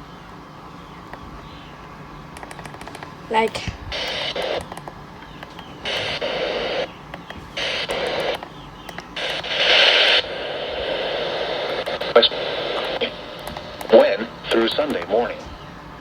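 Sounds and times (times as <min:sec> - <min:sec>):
steady radio hiss: 0:00.0 - 0:16.0
harsh hiss-like radio bursts: 0:03.3 - 0:04.7, 0:05.8 - 0:08.5, 0:09.1 - 0:15.6.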